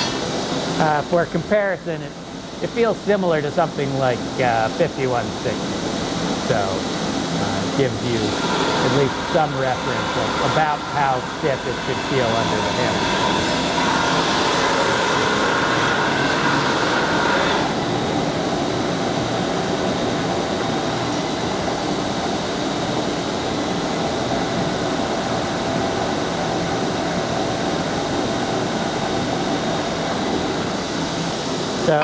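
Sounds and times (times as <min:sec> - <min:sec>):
forge rushing noise: 0:00.0 - 0:21.5.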